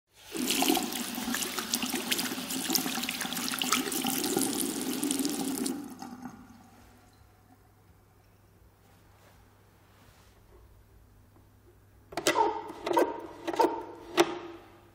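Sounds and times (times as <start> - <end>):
tap water running into washbasin: 0.1 - 7.2
water trickling: 0.2 - 7.6.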